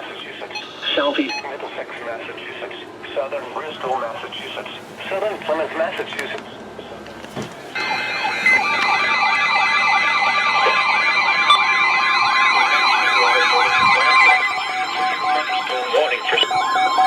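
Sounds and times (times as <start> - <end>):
warbling electronic alert siren: 7.8 - 17.0.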